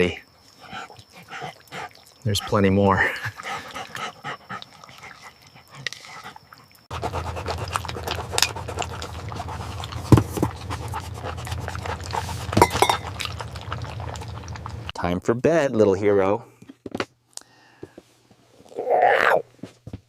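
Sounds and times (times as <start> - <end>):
puppy panting: 0.6 - 15.0
steady low hum: 6.8 - 15.0.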